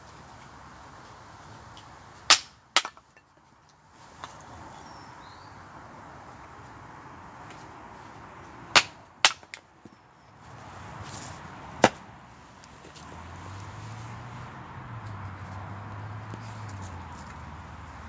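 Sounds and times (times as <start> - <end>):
sharp cracks: 2.3 - 3.1, 8.7 - 9.7.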